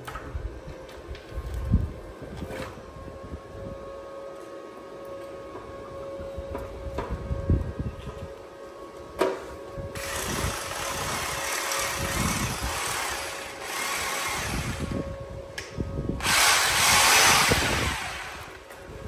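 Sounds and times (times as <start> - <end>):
power tool running: 10.0 - 15.1, 16.2 - 18.8.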